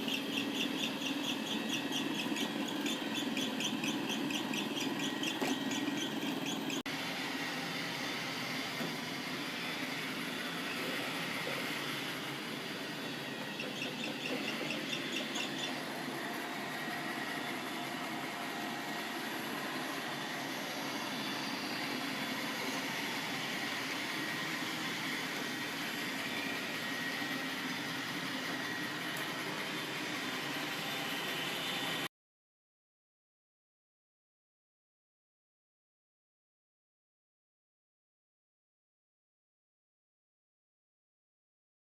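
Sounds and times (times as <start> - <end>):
robot vacuum motor whirring: 0.0 - 32.1.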